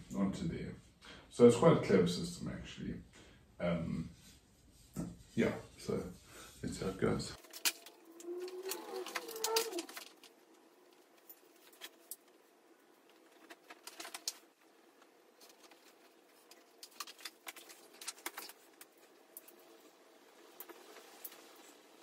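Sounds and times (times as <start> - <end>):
small parts clicking and tapping: 7.4 - 12.4.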